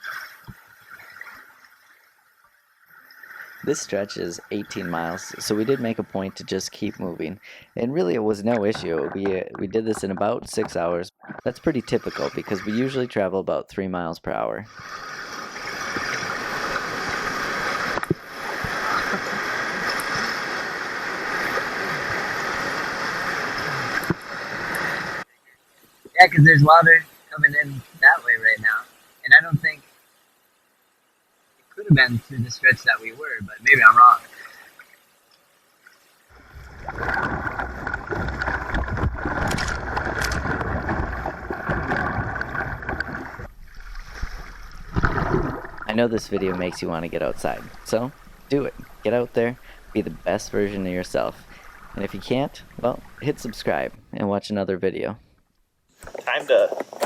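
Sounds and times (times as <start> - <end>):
paddle splashes: 14.7 - 25.2, 36.3 - 54.0
river water rushing: 14.7 - 25.2
rushing river water: 14.7 - 25.3, 31.8 - 34.8, 36.3 - 54.0.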